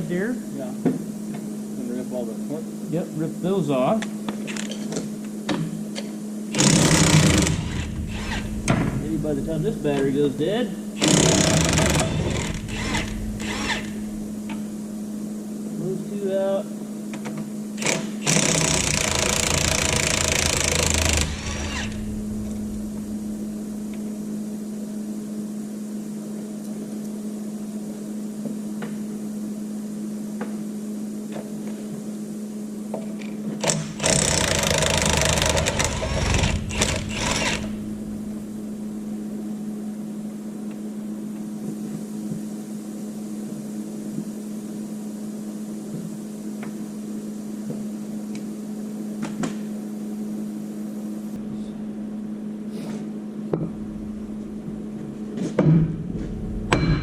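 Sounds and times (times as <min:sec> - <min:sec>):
steady low hum: 0:00.0 - 0:57.0
impact wrench hammering: 0:06.6 - 0:09.0, 0:11.0 - 0:14.1, 0:17.8 - 0:22.0, 0:56.7 - 0:57.0.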